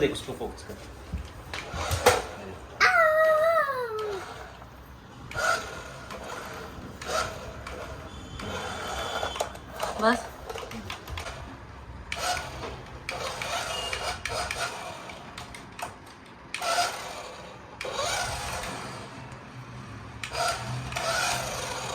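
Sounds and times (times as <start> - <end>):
toy car electric motor whirring: 1.5 - 2.3, 3.1 - 4.6, 5.2 - 11.4, 12.1 - 19.3, 20.2 - 21.9.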